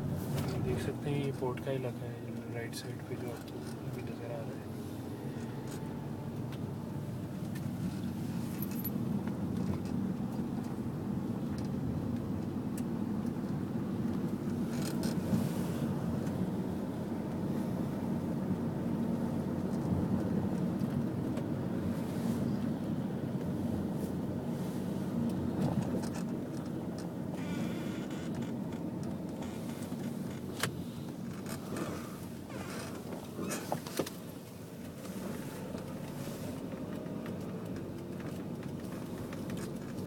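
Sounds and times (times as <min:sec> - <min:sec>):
car driving rumble inside cabin: 0:00.0 - 0:40.0.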